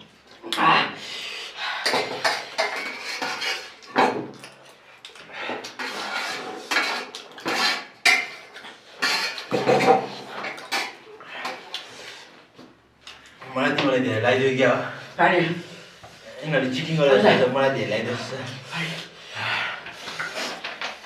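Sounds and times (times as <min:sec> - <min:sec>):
spoons clinking on plates: 0:01.9 - 0:03.9.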